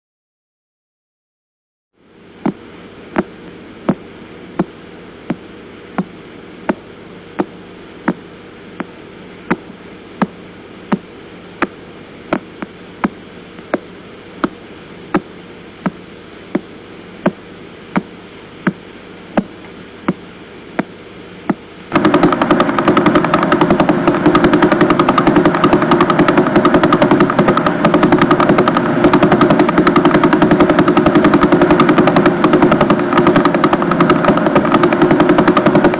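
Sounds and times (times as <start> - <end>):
steady hiss: 2.0 - 28.2
rapid rattling buzz: 2.3 - 35.9
sharp pulsar clicks: 21.5 - 35.9.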